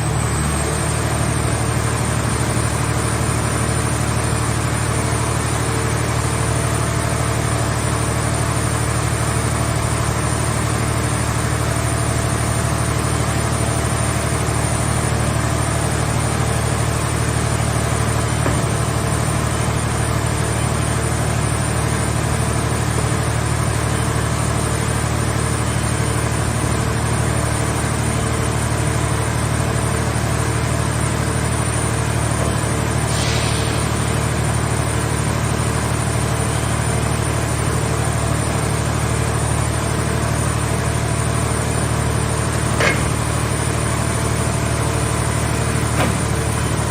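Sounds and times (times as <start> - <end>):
machine engine humming: 13.2 - 46.9.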